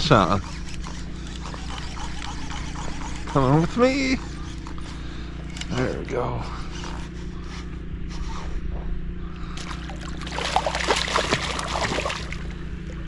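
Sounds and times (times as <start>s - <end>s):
steady low hum: 0.0s - 13.0s
fish splashing at the surface: 9.5s - 12.7s.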